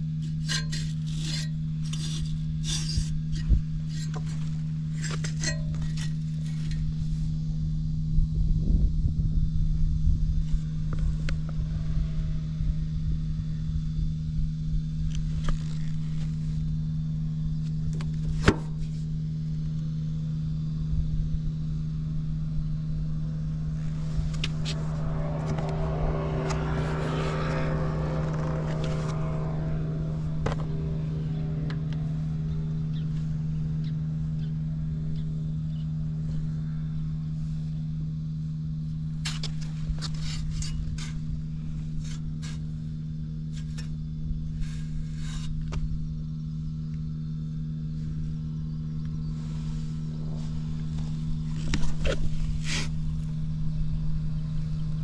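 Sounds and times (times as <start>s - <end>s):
engine idling: 21.5s - 55.0s.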